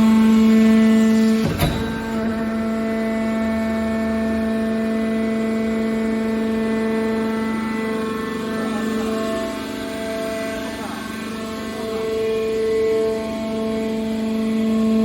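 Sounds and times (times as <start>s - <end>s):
hydraulic pump whining: 0.5s - 14.4s
sharp metallic knock: 1.4s - 3.4s.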